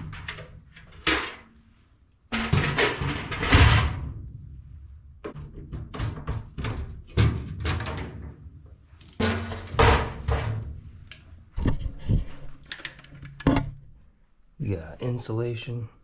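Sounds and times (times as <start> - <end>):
knocks and clunks of metal panel: 13.4 - 13.8.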